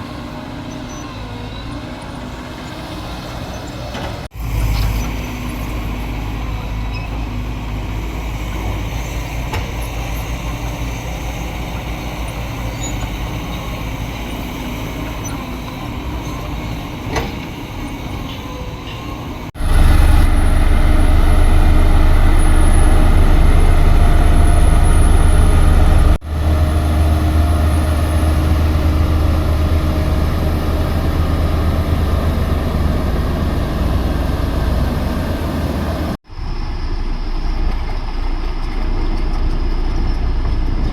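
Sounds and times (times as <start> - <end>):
heavy machinery diesel engines: 0.0 - 40.9.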